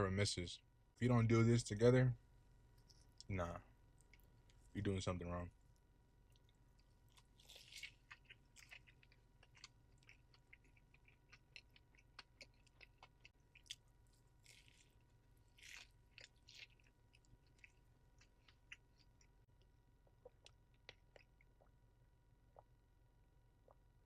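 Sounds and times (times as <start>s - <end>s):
chewing with wet mouth clicks: 4.0s - 4.7s, 5.7s - 21.8s.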